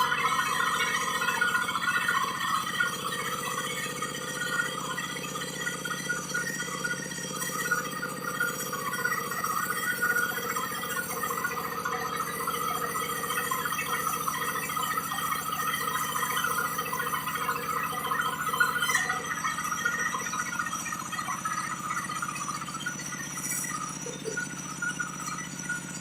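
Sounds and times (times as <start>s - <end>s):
diesel engine drone: 0.0s - 26.0s.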